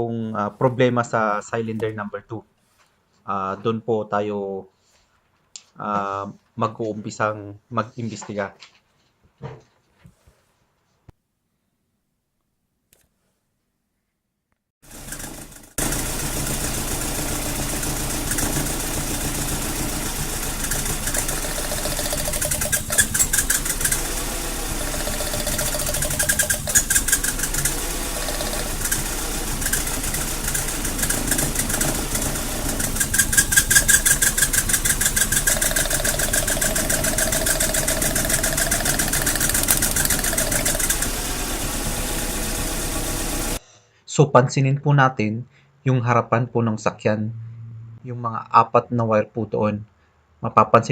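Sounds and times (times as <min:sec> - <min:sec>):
car engine idling roughly: 0:14.8 - 0:43.6.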